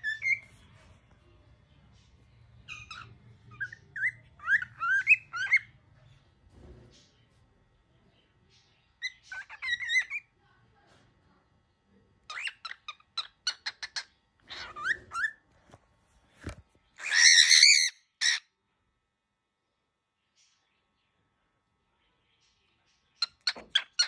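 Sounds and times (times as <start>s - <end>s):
cockatiel squawking: 0.0s - 0.5s, 2.7s - 5.7s, 12.3s - 15.4s, 17.0s - 18.4s.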